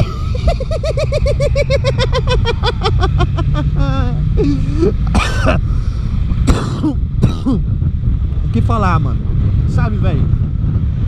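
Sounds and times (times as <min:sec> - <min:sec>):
man giggling: 0:00.0 - 0:05.6
motorcycle engine drone: 0:00.0 - 0:11.0.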